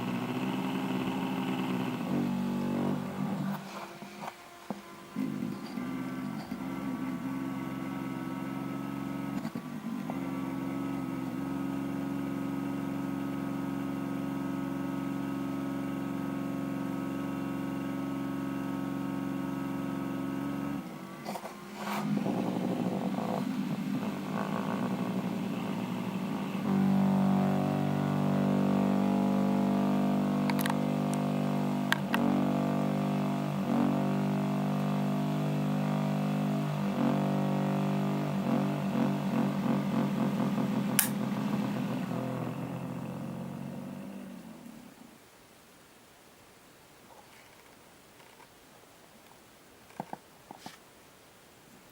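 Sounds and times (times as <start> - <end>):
cooling fan humming: 0.0 - 14.2, 19.2 - 34.1
clicks: 40.9 - 41.2.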